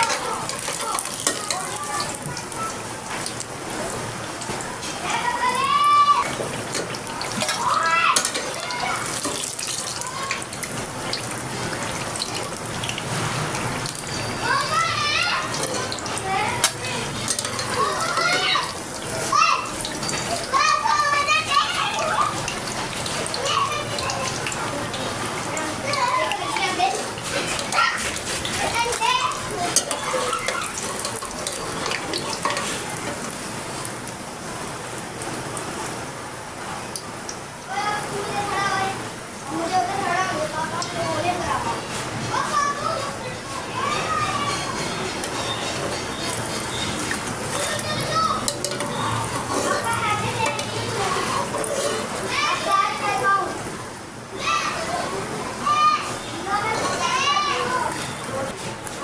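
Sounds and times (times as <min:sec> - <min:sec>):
child calling: 0:00.0 - 0:02.8, 0:05.0 - 0:06.4, 0:07.5 - 0:09.2, 0:09.8 - 0:10.5, 0:14.2 - 0:22.5, 0:23.3 - 0:30.9, 0:37.7 - 0:53.7, 0:54.4 - 0:58.5
utensil stirring clicks: 0:00.0 - 0:05.0, 0:06.2 - 0:34.2, 0:43.0 - 0:53.0
food sizzling in a pan: 0:00.0 - 0:59.0
tap water running into sink: 0:00.0 - 0:59.0.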